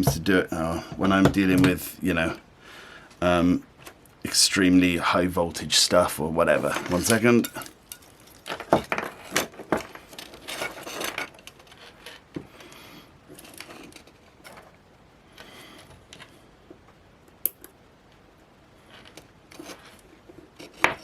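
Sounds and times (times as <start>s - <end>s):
parts rustling: 5.9s - 17.1s, 17.7s - 21.0s
small parts clicking and clattering: 6.7s - 12.7s.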